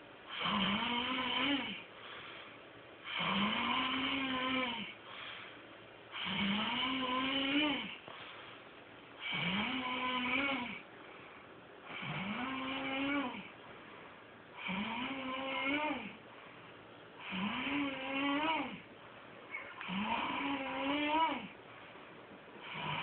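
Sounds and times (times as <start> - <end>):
quiet breaths: 0.0 - 23.0
man snoring: 0.3 - 1.9, 3.0 - 5.0, 6.1 - 8.0, 9.2 - 10.8, 11.9 - 13.5, 14.6 - 16.2, 17.2 - 18.9, 19.8 - 21.6, 22.6 - 23.0.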